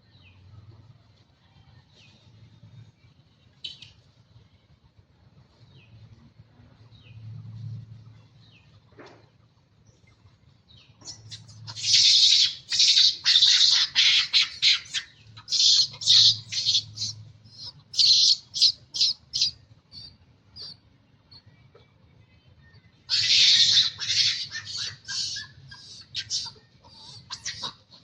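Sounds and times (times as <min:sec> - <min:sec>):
monkey screeching: 0:11.1 - 0:20.1, 0:23.1 - 0:28.0.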